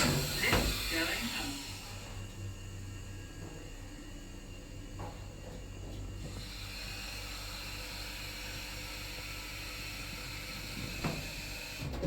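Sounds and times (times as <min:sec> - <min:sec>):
lift car hiss and hum: 0:00.0 - 0:12.0.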